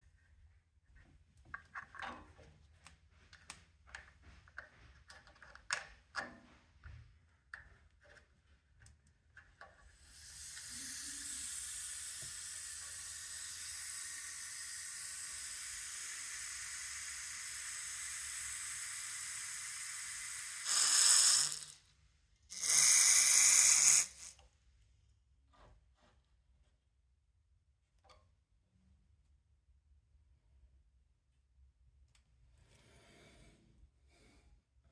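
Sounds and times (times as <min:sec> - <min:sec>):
air hissing from valve: 0:10.0 - 0:21.8, 0:22.5 - 0:24.4
water sputtering from valve: 0:10.0 - 0:21.8, 0:22.5 - 0:24.3.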